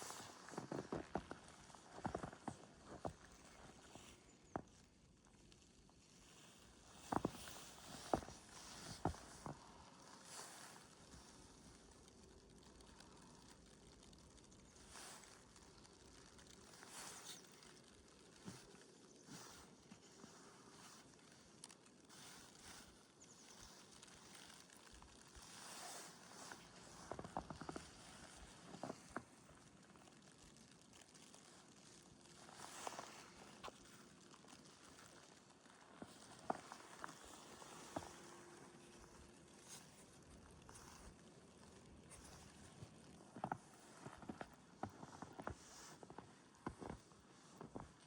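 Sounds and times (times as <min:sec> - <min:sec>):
footsteps crunching in snow: 0:00.0 - 0:04.8, 0:06.3 - 0:11.8, 0:14.8 - 0:21.2, 0:21.8 - 0:48.0
small clicks and rustles: 0:00.0 - 0:48.0
soft hiss: 0:00.0 - 0:48.0.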